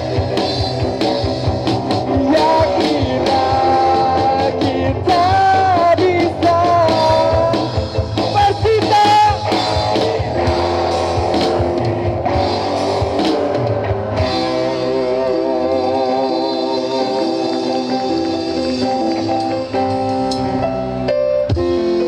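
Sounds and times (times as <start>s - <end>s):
rock band playing: 0.0s - 22.0s
person singing: 2.0s - 10.1s, 14.2s - 19.3s.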